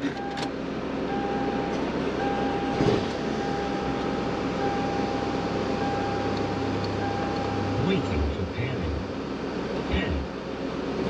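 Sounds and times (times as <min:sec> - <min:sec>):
faint whine: 0:00.0 - 0:11.0
vehicle engines idling: 0:00.0 - 0:11.0.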